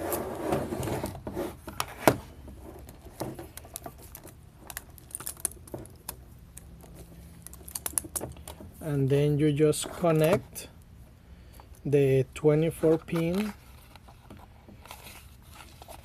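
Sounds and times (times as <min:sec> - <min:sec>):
cables and plastic connectors rattling: 0:02.8 - 0:08.8, 0:12.6 - 0:16.0.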